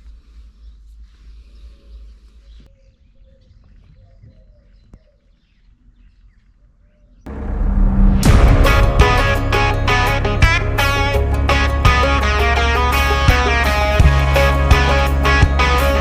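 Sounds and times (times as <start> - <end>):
wind rumble on microphone: 7.3 - 13.6
loud guitar music: 7.3 - 16.0.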